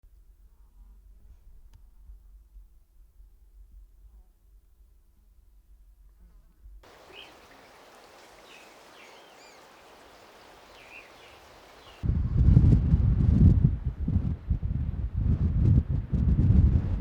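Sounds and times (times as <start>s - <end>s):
outdoor ambience: 0.1s - 12.2s
wind buffeting microphone: 6.8s - 17.0s.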